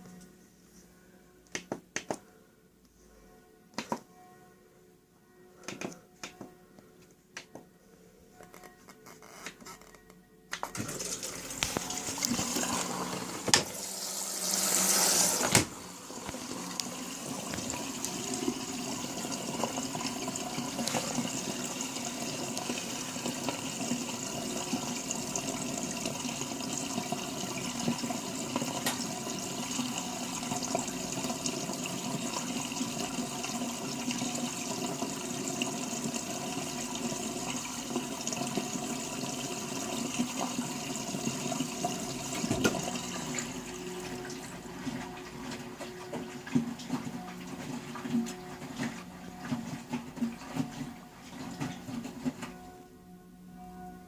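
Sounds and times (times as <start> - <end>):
water rushing into washing machine: 10.7 - 52.6.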